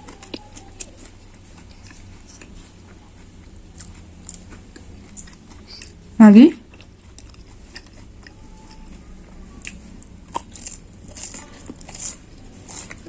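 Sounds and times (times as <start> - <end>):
crunchy food chewing: 0.0 - 13.0.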